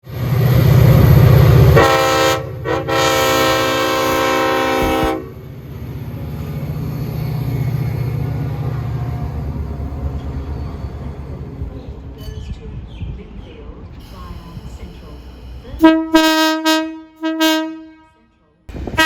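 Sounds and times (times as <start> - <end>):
train low rumble: 0.0 - 19.0
train horn: 1.7 - 5.4, 14.2 - 19.0.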